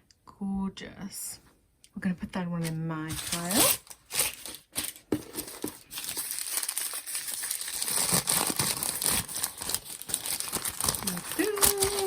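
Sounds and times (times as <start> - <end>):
packaging wrap crinkling: 2.6 - 12.0.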